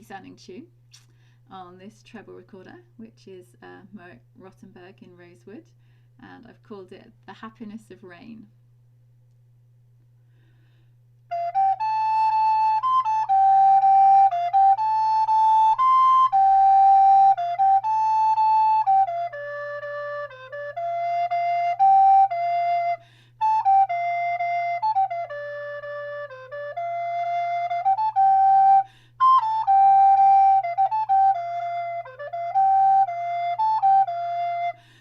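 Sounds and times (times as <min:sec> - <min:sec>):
recorder playing happy tune: 0:11.3 - 0:34.7.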